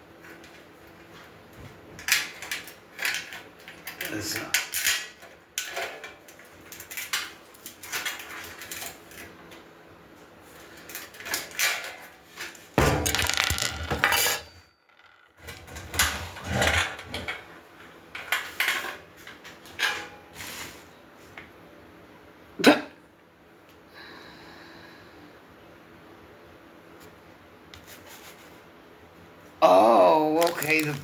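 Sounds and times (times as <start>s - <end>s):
metal parts rattling: 12.8s - 15.4s, 30.4s - 31.0s.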